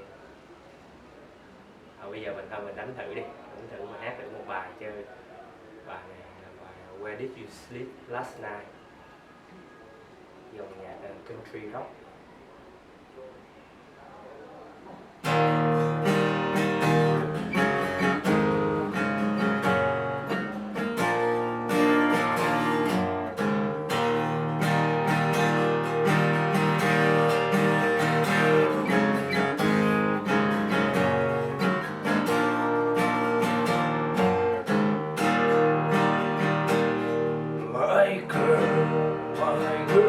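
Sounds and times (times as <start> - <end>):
acoustic guitar strumming: 15.2 - 40.0.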